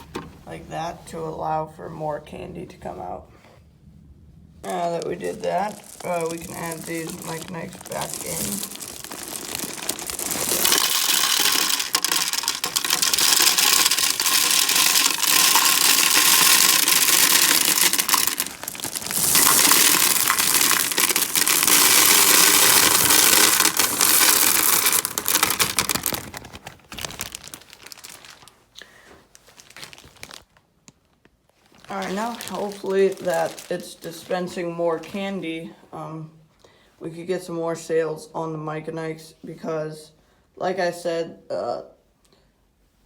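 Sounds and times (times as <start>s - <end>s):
candies rattling into canister: 4.6s - 28.5s, 29.3s - 30.5s, 31.7s - 34.3s.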